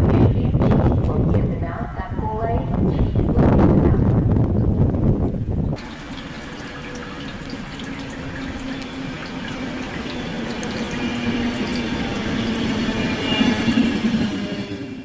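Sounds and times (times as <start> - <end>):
steady rain falling: 5.8 - 13.9.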